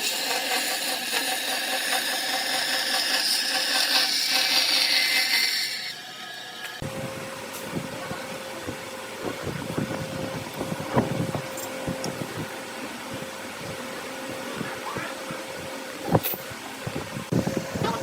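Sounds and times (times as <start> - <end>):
wood lathe humming: 0.0 - 7.4.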